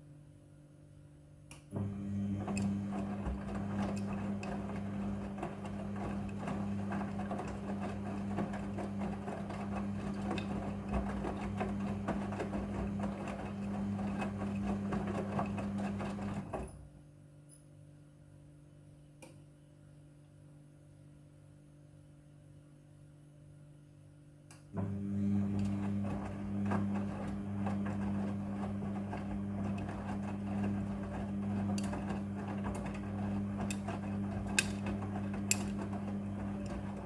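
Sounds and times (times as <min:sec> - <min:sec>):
washing machine running: 0:01.7 - 0:16.9, 0:24.8 - 0:37.0.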